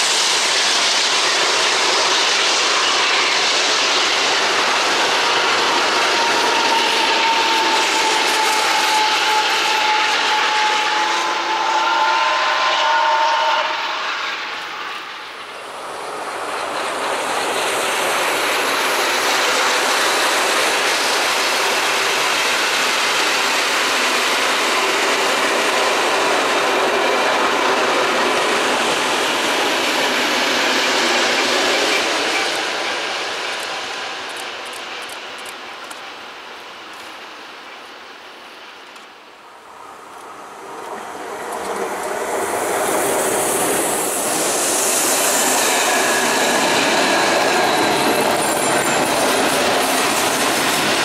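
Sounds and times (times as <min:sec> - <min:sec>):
train wheels rolling: 0:00.0 - 0:38.0, 0:38.6 - 0:51.0
steam exhaust rush: 0:00.0 - 0:51.0.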